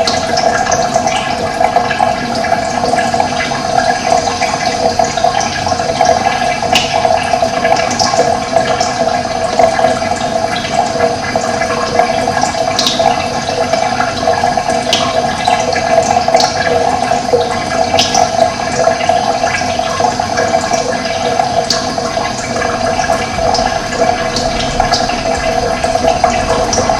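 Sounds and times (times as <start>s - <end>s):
water rushing: 18.6s - 26.9s.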